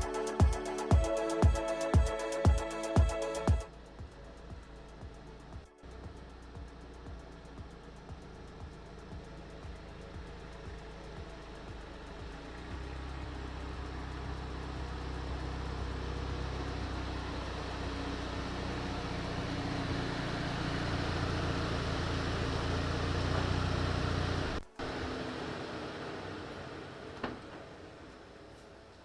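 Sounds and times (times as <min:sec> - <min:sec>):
car engine running: 0:00.0 - 0:28.7.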